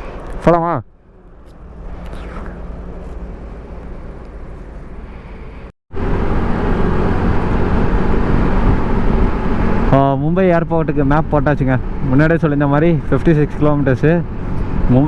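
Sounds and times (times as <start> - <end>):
road noise: 0.0 - 12.1
scooter engine: 1.1 - 5.7.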